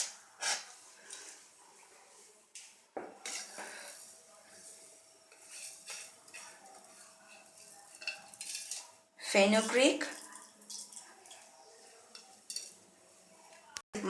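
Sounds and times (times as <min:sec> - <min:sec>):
metal spoon clinking against pan: 0:03.2 - 0:03.6, 0:05.3 - 0:09.0, 0:09.6 - 0:12.8.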